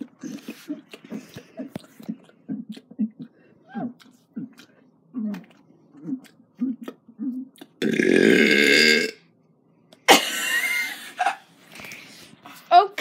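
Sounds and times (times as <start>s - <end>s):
wavering vocal sound: 0.0s - 7.8s
person burping loudly: 7.8s - 9.2s.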